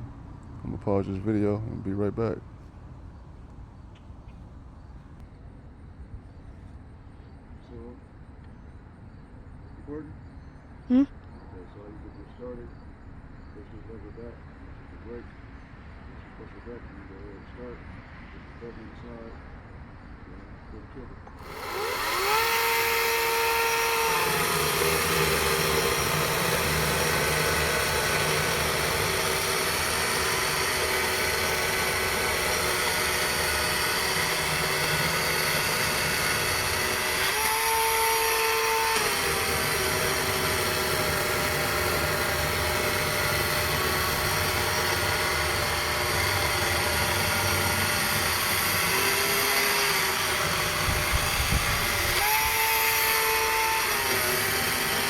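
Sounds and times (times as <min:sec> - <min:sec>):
electric chainsaw whine: 0:21.3 - 0:55.0.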